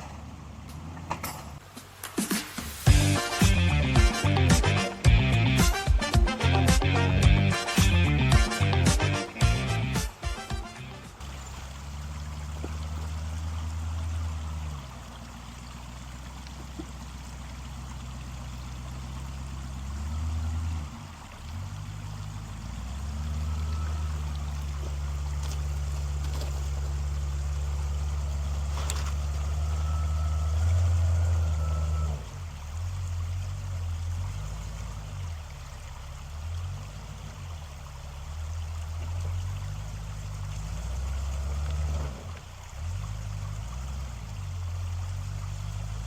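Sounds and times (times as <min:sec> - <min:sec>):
truck engine at low revs: 0:00.0 - 0:46.0.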